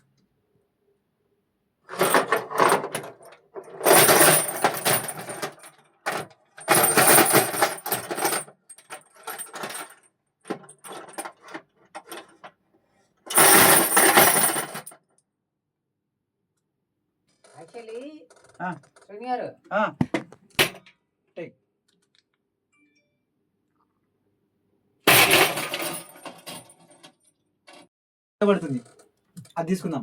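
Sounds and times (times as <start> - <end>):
chain rattling: 1.9 - 12.3.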